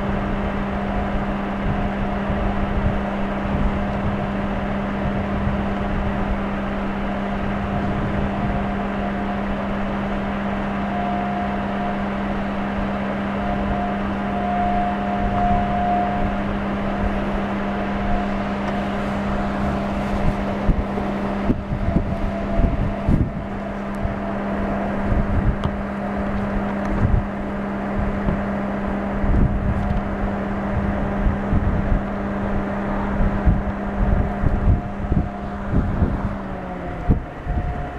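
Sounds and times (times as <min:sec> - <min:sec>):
steady low hum: 0:00.0 - 0:37.9
wind buffeting microphone: 0:00.0 - 0:37.9
faint high steady tone: 0:07.0 - 0:26.7.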